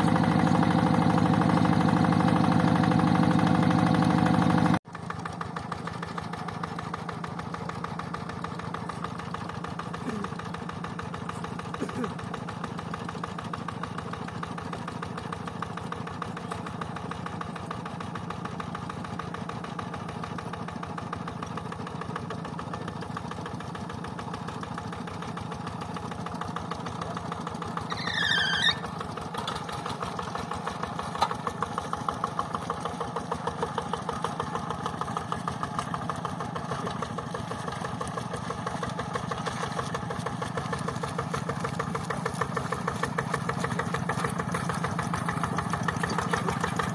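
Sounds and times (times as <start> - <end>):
tractor diesel engine running: 0.0 - 46.9.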